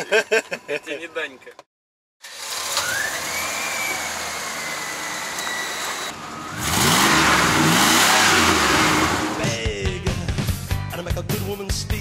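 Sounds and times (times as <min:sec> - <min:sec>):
car engine revving: 0:02.2 - 0:09.6
rushing noise: 0:06.5 - 0:09.5.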